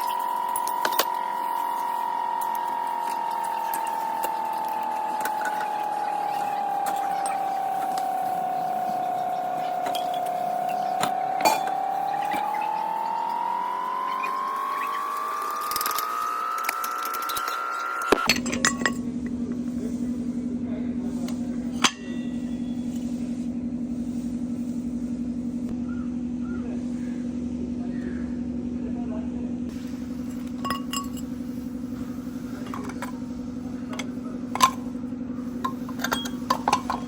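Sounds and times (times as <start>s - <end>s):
pulsing rear wheel hum: 0.0s - 37.0s.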